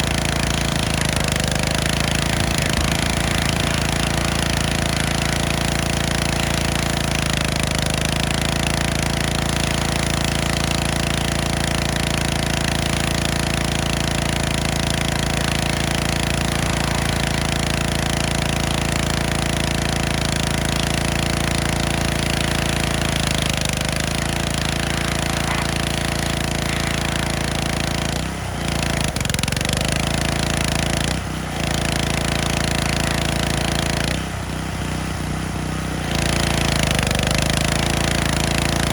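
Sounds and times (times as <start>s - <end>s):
pressure washer engine running: 0.0s - 38.9s
water spray hissing: 0.8s - 7.2s, 14.0s - 20.5s, 21.8s - 28.2s.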